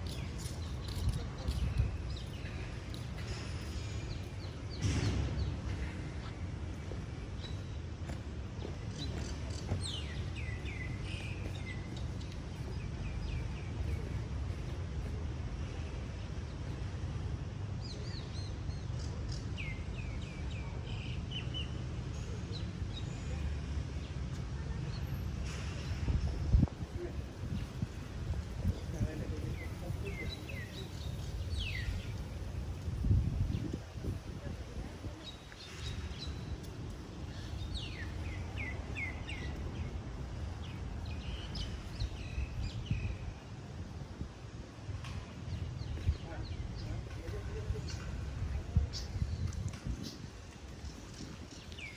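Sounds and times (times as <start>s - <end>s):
steady low rumble: 25.2s - 51.9s.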